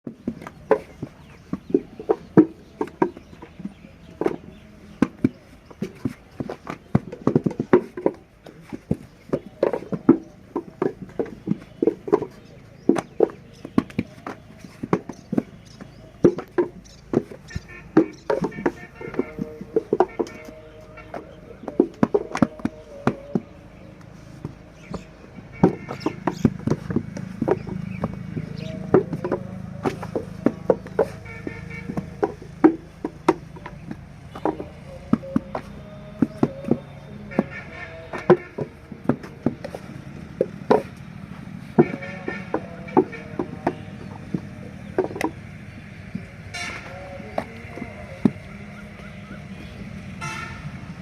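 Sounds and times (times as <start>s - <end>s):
knocks and taps of brick-making: 0.1s - 50.5s.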